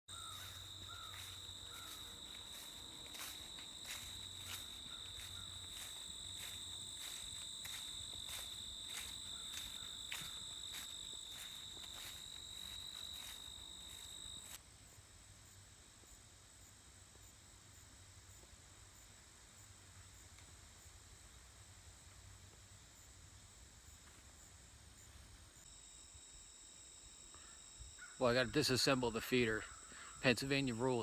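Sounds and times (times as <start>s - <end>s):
crickets trilling: 0.1s - 14.6s, 25.0s - 31.0s.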